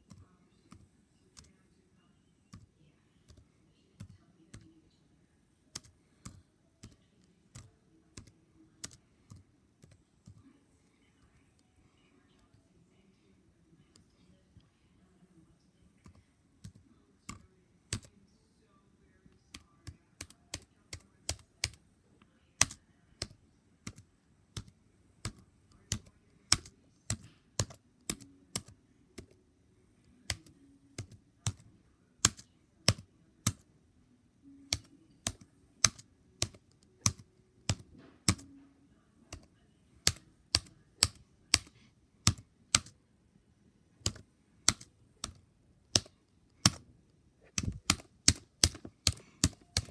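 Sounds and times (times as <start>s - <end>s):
mechanical keyboard typing: 22.6s - 29.4s, 32.2s - 33.6s, 34.7s - 38.5s, 39.3s - 42.9s, 44.0s - 49.9s.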